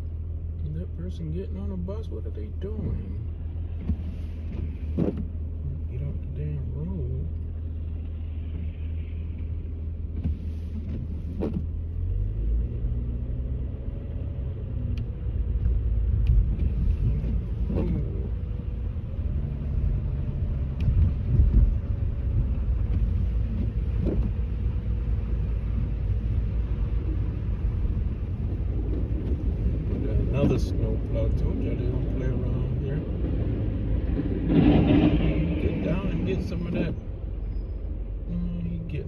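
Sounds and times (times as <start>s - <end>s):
car engine and road rumble: 0.0s - 39.0s.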